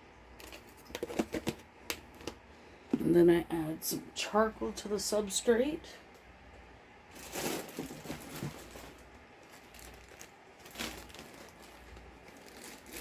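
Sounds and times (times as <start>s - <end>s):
plastic bag rustling: 0.4s - 2.3s, 7.1s - 13.0s.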